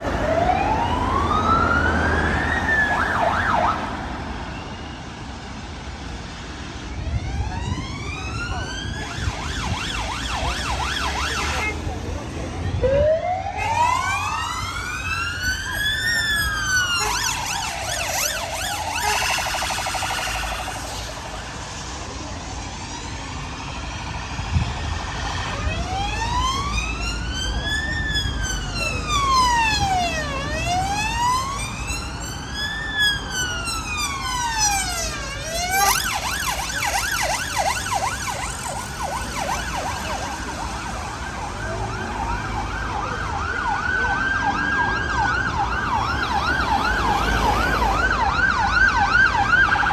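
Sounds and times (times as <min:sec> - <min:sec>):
passing traffic rumble: 0:00.0 - 0:49.9
siren wailing and yelping: 0:12.8 - 0:21.5, 0:25.6 - 0:49.9.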